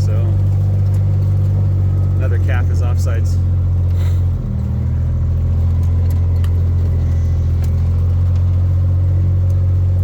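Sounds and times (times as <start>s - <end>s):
utility vehicle engine droning: 0.0s - 10.0s.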